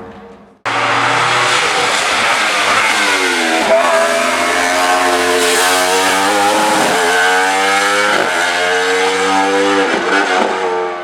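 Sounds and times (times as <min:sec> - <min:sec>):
racing car engine at full throttle: 0:00.7 - 0:11.0.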